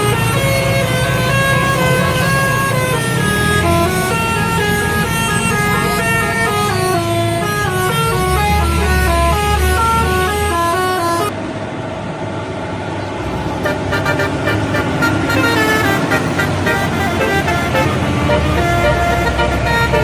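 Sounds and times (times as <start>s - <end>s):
bus horn playing a tune: 0.0s - 11.3s, 13.6s - 20.0s
bus engine rumble: 0.0s - 20.0s
road noise: 0.0s - 20.0s.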